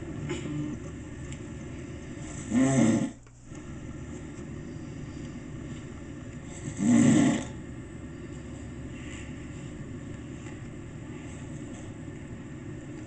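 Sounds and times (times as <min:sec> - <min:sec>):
man snoring: 0:02.2 - 0:03.2, 0:06.5 - 0:07.6.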